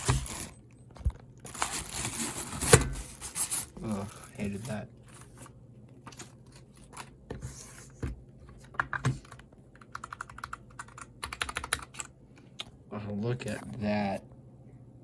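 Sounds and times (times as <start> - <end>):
rapid typing: 9.2 - 12.1.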